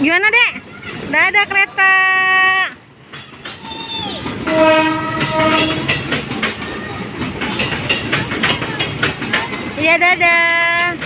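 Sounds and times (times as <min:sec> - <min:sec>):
train wheels clattering over rail joints: 0:03.0 - 0:11.0
train horn blasts: 0:04.4 - 0:06.0.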